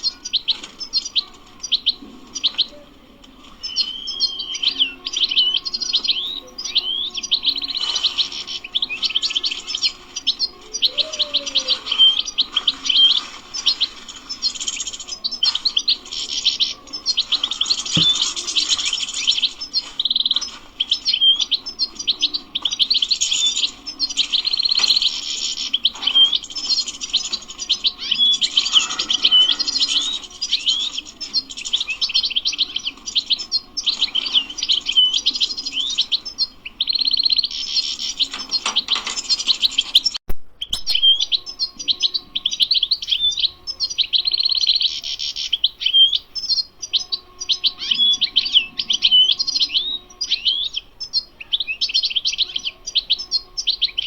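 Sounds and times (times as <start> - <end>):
goldfinch twittering song: 0.0 - 2.8, 3.4 - 54.0.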